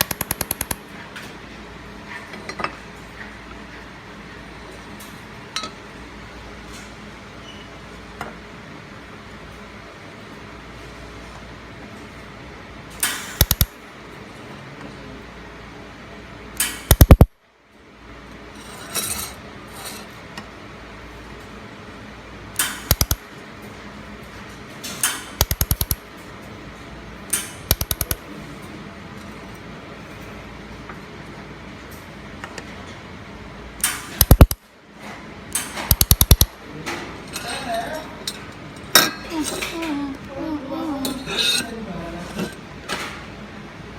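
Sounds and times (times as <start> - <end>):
laser welder snapping clicks: 0.0 - 0.8, 13.0 - 13.7, 16.6 - 17.3, 22.6 - 23.2, 25.0 - 26.0, 27.3 - 28.2, 33.8 - 34.6, 35.6 - 36.5
cooling fan hum: 0.0 - 43.9.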